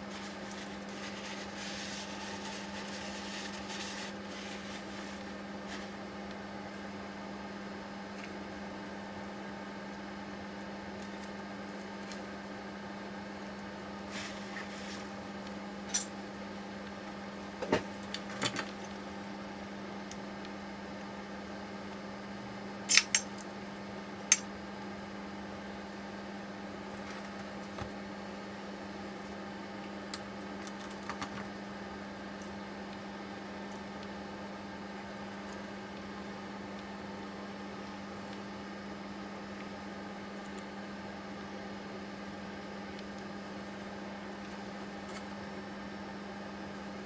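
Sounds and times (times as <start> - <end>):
low electrical hum: 0.0 - 47.0
metal parts clinking on workbench: 22.9 - 23.4.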